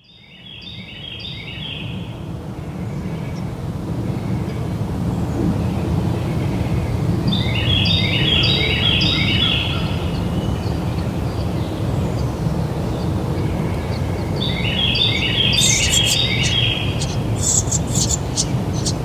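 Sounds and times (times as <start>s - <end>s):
low background rumble: 13.9s - 19.0s
sharp high bird chirps: 15.1s - 19.0s
bird stepped trill: 15.3s - 19.0s.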